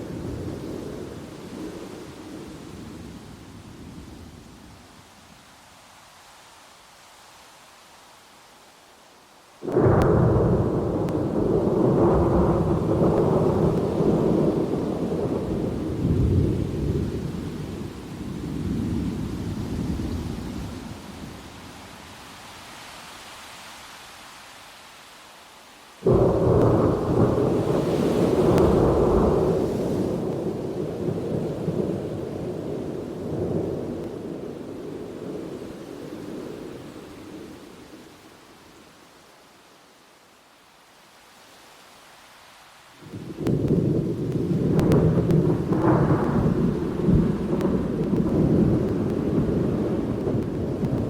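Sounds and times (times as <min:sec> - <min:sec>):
thunder clap: 0:09.7 - 0:17.2, 0:26.1 - 0:34.5, 0:43.2 - 0:51.0
thunder rumbling: 0:09.7 - 0:20.4, 0:26.0 - 0:36.9, 0:43.1 - 0:51.0.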